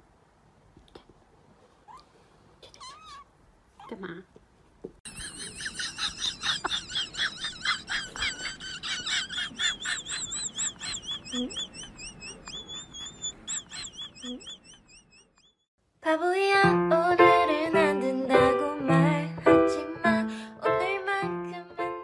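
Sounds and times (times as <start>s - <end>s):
small bird singing: 9.6s - 15.7s.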